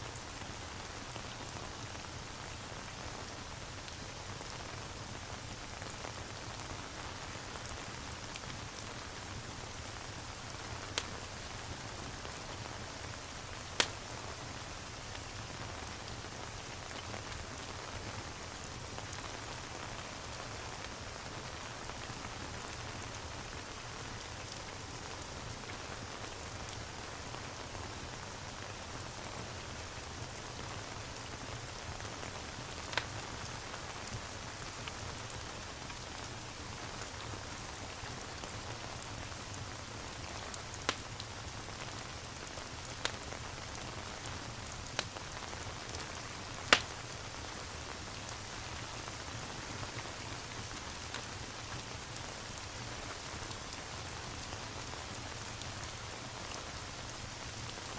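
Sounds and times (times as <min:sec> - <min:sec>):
steady rain: 0:00.0 - 0:57.9
wood fire crackling pops: 0:10.9 - 0:11.2, 0:13.7 - 0:14.1, 0:32.9 - 0:33.1, 0:40.8 - 0:41.1, 0:44.9 - 0:45.3, 0:46.7 - 0:47.0.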